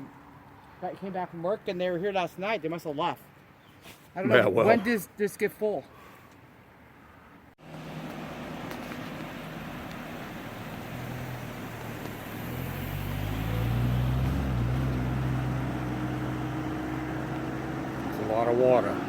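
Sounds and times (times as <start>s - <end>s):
engine humming: 7.6s - 19.0s.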